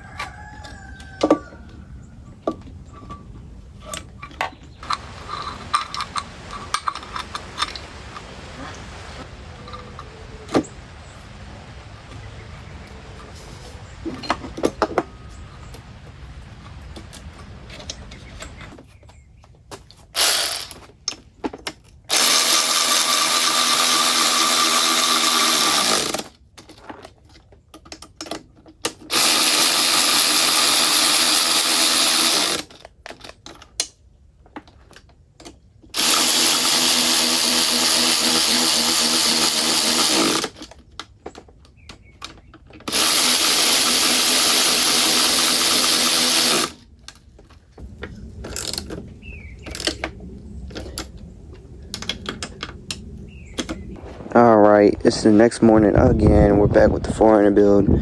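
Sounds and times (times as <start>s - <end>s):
electric power tool running: 20.2s - 20.8s, 22.1s - 26.3s, 29.1s - 32.8s, 36.0s - 40.7s, 42.9s - 46.8s.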